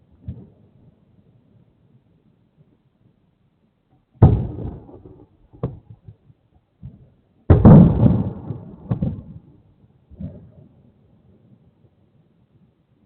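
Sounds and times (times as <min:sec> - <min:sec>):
fireworks sharp crack: 0:04.2 - 0:06.0, 0:07.5 - 0:09.4
fireworks booming with echo: 0:04.2 - 0:06.2, 0:06.8 - 0:09.5.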